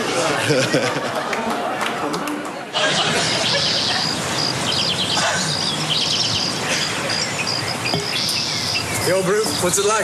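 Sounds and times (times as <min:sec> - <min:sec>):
bird chirps: 0:03.0 - 0:09.7
insects chirping: 0:03.3 - 0:09.7.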